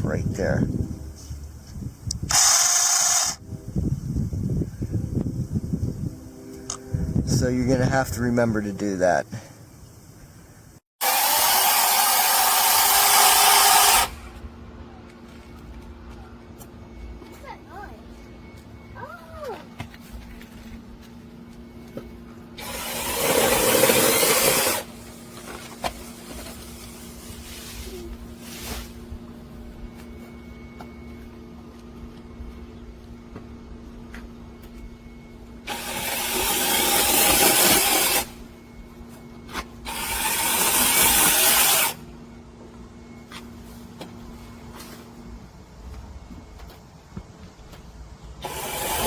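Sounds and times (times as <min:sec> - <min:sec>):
battery chainsaw running: 0:02.3 - 0:03.4, 0:11.0 - 0:14.3, 0:22.6 - 0:25.0, 0:35.6 - 0:38.4, 0:39.8 - 0:42.0, 0:48.4 - 0:49.0.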